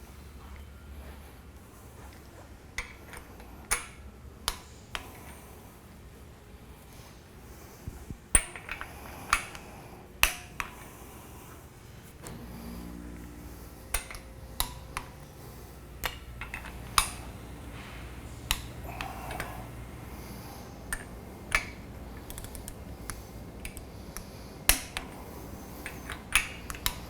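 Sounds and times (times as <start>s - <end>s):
steady low hum: 0.0s - 27.0s
wrench clicking on metal bolts: 8.4s - 9.6s, 13.9s - 15.2s, 16.0s - 17.4s, 20.9s - 25.1s, 25.8s - 27.0s.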